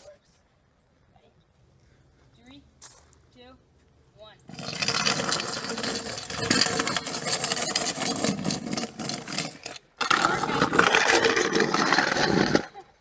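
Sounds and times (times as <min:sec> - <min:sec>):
scooter wheels grinding rattle: 0:04.5 - 0:13.0.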